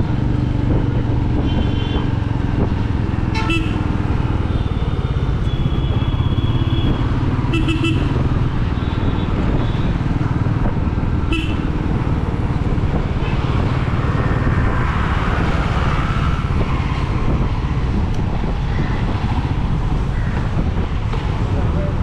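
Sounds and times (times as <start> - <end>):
motorcycle engine cruising: 0.0 - 22.0
road and traffic noise: 0.0 - 22.0
vehicle horn toot: 3.3 - 3.8, 5.4 - 8.1.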